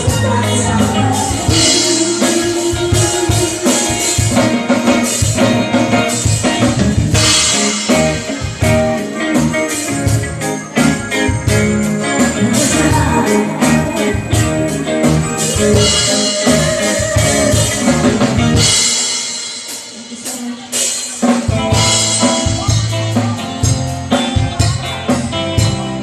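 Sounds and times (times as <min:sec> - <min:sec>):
person singing: 0:00.0 - 0:05.7, 0:12.0 - 0:23.7
drum kit: 0:00.0 - 0:26.0
live band playing: 0:00.0 - 0:26.0.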